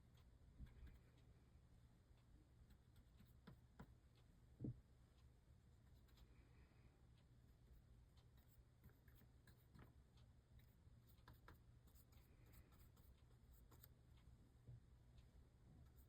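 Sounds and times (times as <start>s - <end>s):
faint ticks and crackles: 0.0s - 16.0s
low steady hum: 0.0s - 16.0s.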